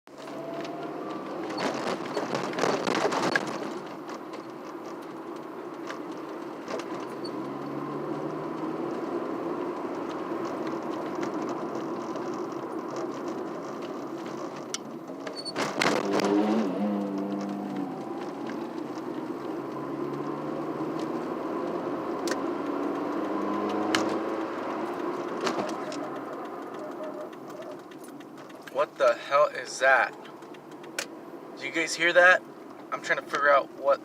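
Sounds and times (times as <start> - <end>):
car interior road noise: 0.1 - 34.0
rattling in car cabin: 22.0 - 33.2.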